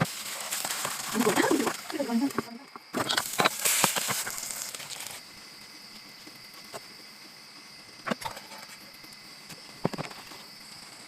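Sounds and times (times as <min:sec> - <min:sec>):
crinkling handling noise: 0:00.0 - 0:06.9
faint steady hiss: 0:00.0 - 0:11.0.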